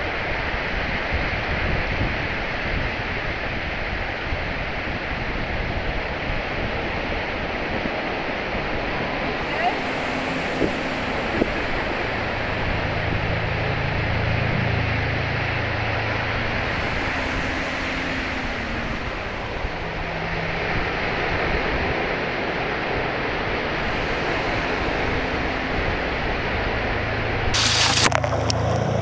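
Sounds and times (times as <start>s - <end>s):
sea waves: 7.0s - 29.0s.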